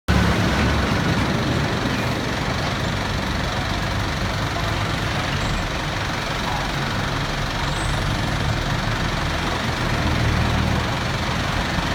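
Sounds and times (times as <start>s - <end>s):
vehicle engine idling: 0.1s - 11.9s.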